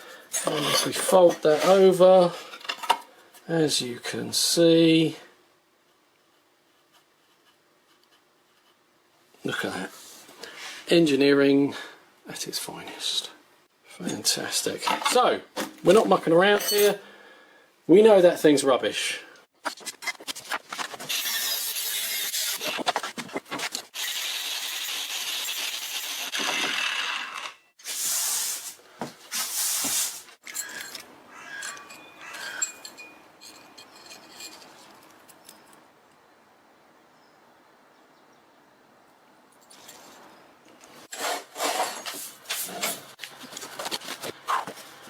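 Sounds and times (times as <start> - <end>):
hand tool scraping and rasping: 0.0 - 2.8, 29.4 - 35.0, 41.0 - 44.8.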